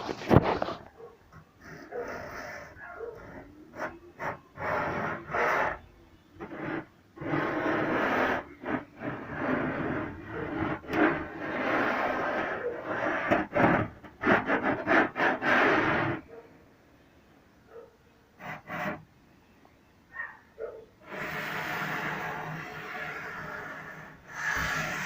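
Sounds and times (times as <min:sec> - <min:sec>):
hand tool scraping and rasping: 0:01.6 - 0:16.2, 0:18.4 - 0:19.1, 0:21.0 - 0:25.0.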